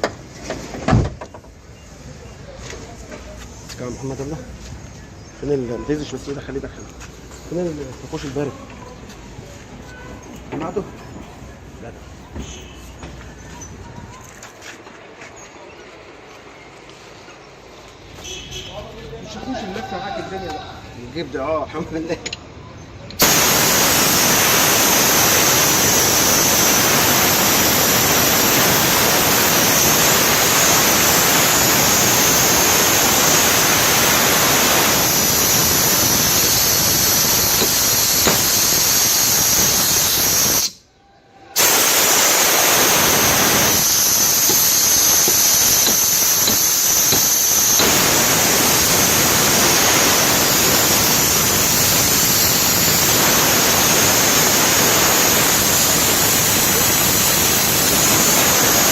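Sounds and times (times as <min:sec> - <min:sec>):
loud rushing hiss: 0:23.2 - 0:40.8, 0:41.6 - 0:58.9.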